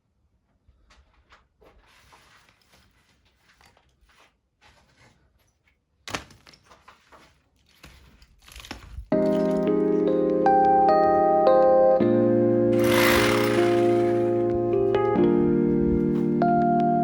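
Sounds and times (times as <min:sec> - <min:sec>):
faint scraping and handling: 0:01.7 - 0:05.8.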